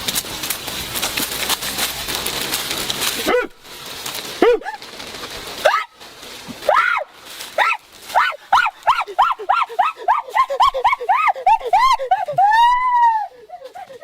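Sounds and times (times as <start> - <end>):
dense crackling clicks: 0.0 - 11.1
animal calls: 3.2 - 3.6, 6.7 - 14.0.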